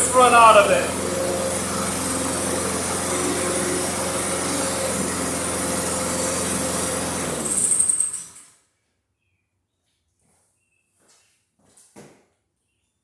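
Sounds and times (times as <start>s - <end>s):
lawn mower engine running: 0.0s - 8.4s.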